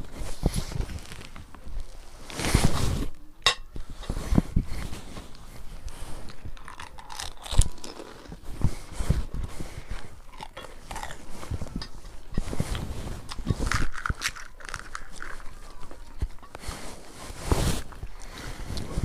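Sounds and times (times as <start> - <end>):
wet chewing: 6.2 - 17.1
crisp shells crunching: 6.3 - 9.0, 9.8 - 16.9.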